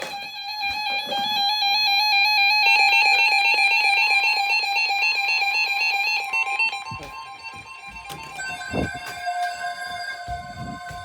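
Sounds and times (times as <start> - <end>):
electronic trilling alert tone: 4.3 - 11.0.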